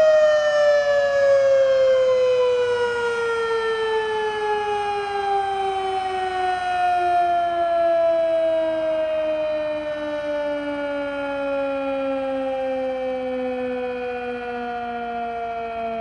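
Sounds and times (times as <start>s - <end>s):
two-tone warning siren wail: 0.0s - 16.0s.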